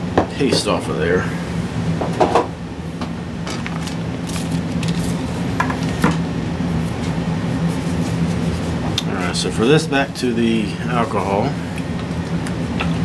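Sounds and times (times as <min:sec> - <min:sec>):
parts knocking on work surface: 0:02.0 - 0:02.5.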